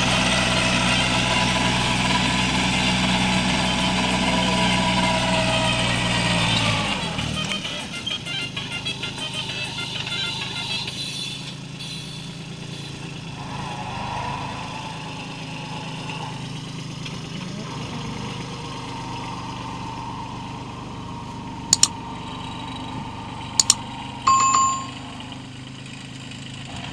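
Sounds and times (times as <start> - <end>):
tractor diesel engine running: 0.0 - 26.9
quick double click: 23.6 - 23.8.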